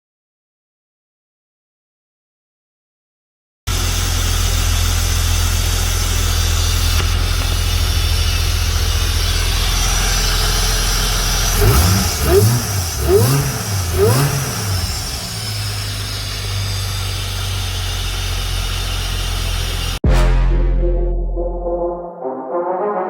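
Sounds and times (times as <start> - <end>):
car engine idling and revving: 3.7 - 20.0.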